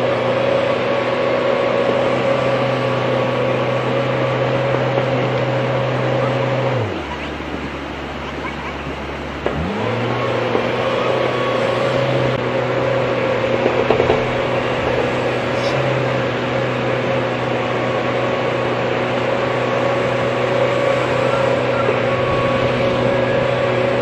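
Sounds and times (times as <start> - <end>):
excavator engine humming: 0.0 - 24.0.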